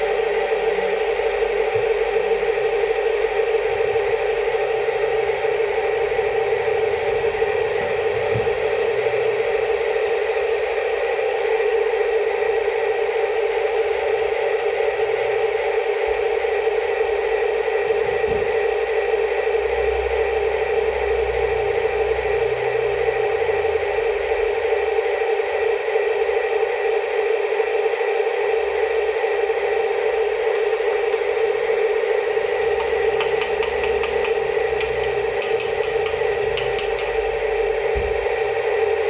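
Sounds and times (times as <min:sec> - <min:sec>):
sharp ticking: 0:32.8 - 0:37.2.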